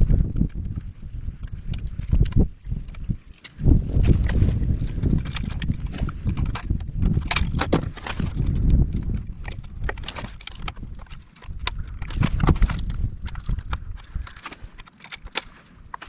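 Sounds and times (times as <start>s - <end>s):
clicks and knocks of tools: 1.4s - 16.0s.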